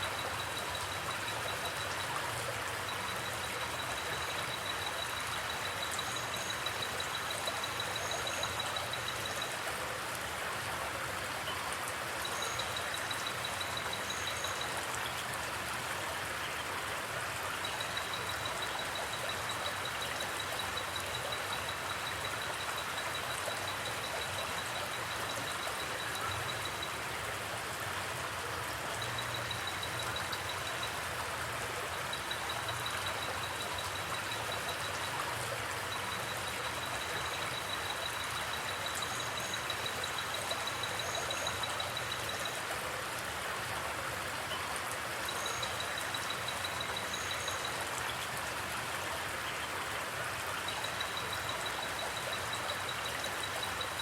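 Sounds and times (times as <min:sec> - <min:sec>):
flowing creek: 0:00.0 - 0:54.0.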